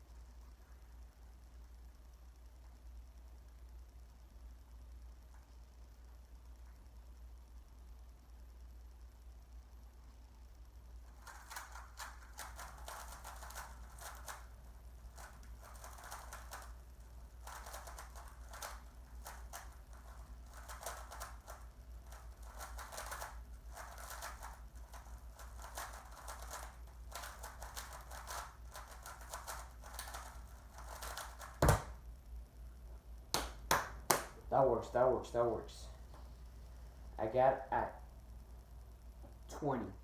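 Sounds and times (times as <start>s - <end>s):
puzzle cube plastic clacking: 11.2s - 14.5s, 15.1s - 16.8s, 17.4s - 32.0s.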